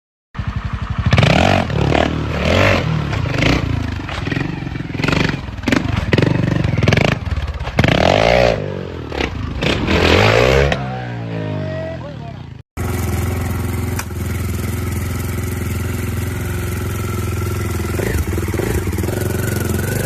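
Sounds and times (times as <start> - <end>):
engine clatter: 0.4 - 8.1, 12.8 - 20.0
engine revving: 0.4 - 20.0.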